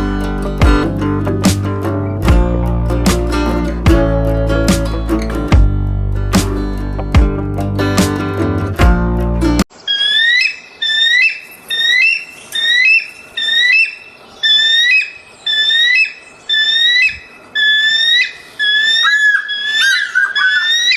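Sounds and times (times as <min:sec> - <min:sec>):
dog whining: 0:18.7 - 0:20.9.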